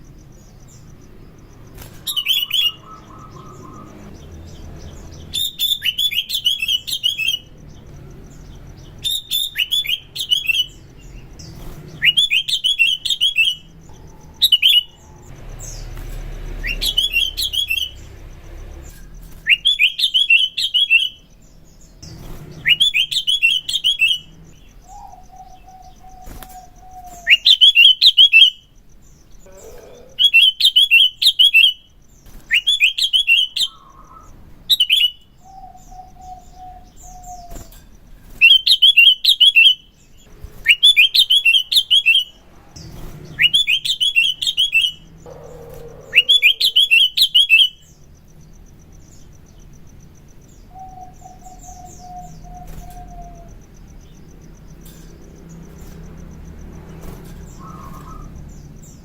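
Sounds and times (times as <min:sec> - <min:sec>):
bird singing rapid chirps: 0:00.0 - 0:59.0.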